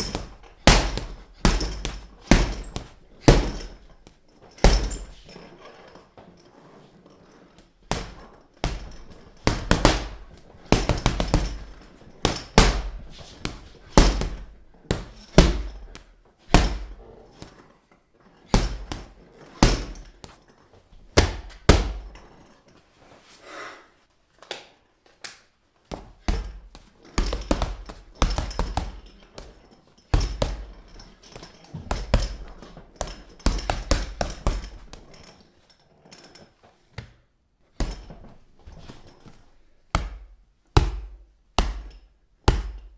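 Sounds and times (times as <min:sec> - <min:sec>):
fists punching heavy bag: 0:00.0 - 0:05.3, 0:07.8 - 0:17.5, 0:18.5 - 0:20.4, 0:21.0 - 0:22.3, 0:25.9 - 0:29.6, 0:30.2 - 0:35.2, 0:37.8 - 0:42.9.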